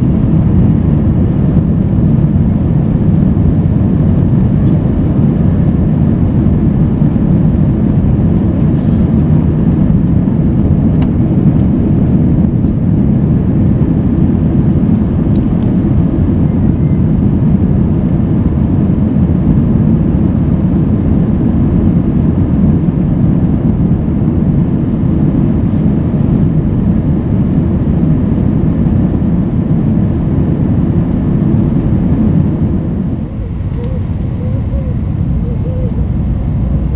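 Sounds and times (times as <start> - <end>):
jet engine cabin roar: 0.0 - 36.9.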